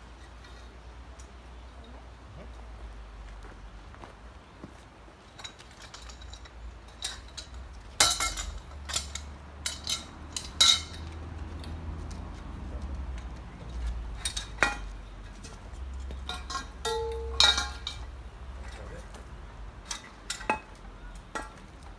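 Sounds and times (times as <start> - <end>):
metal rig parts clanking: 5.4 - 11.8, 13.2 - 21.9
ringing metal knocks: 16.1 - 18.2.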